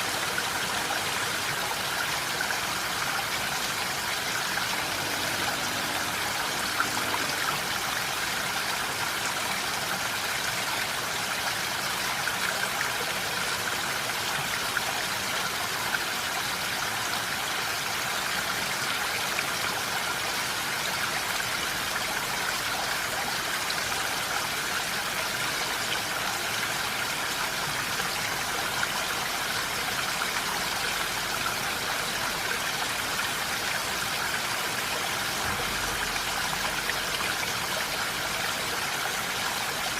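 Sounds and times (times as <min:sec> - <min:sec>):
steady rain hiss: 0:00.0 - 0:12.0.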